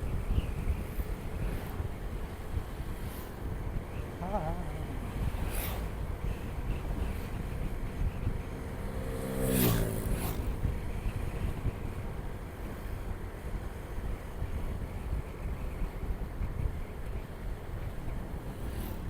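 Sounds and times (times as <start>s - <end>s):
motorcycle engine and road rumble: 0.0s - 19.0s
wind buffeting camera: 0.0s - 19.0s
vehicle passing by: 4.2s - 11.7s.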